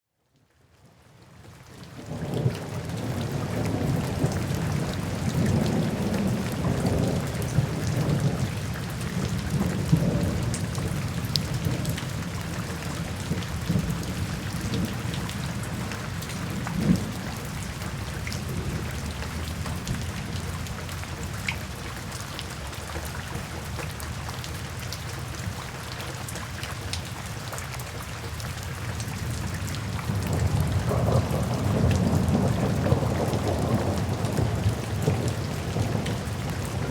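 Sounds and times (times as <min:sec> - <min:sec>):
steady rain: 0:00.2 - 0:36.9
deep rolling thunder: 0:30.1 - 0:36.9.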